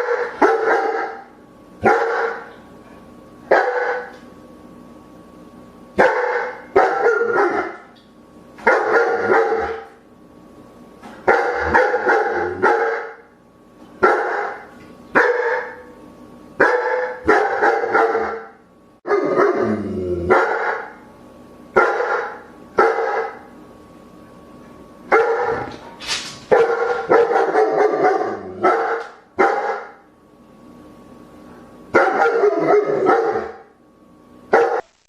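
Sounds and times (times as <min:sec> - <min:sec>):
dog barking loudly: 0:00.0 - 0:02.5, 0:03.5 - 0:04.1, 0:06.0 - 0:07.9, 0:08.6 - 0:09.9, 0:11.2 - 0:13.2, 0:14.0 - 0:15.9, 0:16.6 - 0:19.6, 0:20.3 - 0:21.0, 0:21.8 - 0:23.4, 0:25.1 - 0:25.7, 0:26.5 - 0:30.0, 0:32.0 - 0:33.7, 0:34.5 - 0:35.0.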